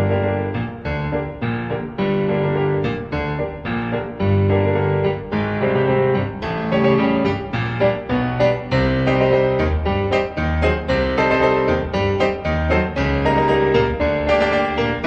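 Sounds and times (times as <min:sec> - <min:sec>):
slow piano chords: 0:00.0 - 0:15.0.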